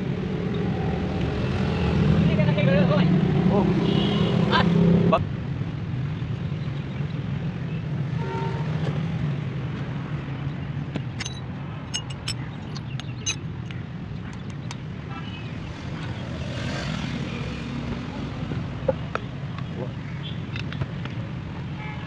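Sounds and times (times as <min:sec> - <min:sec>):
sharp metallic clicks and taps: 0:10.9 - 0:14.9.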